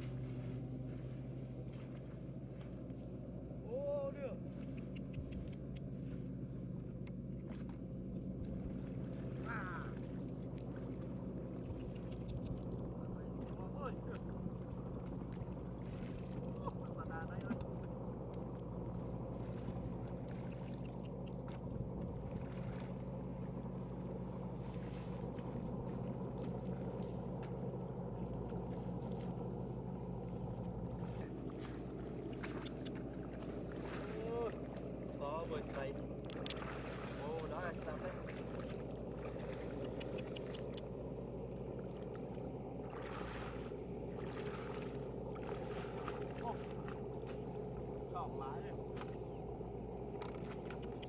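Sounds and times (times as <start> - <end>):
tractor engine droning: 0.0 - 51.0
faint ticks: 4.5 - 6.0, 11.6 - 12.9, 39.7 - 40.9, 50.2 - 51.0.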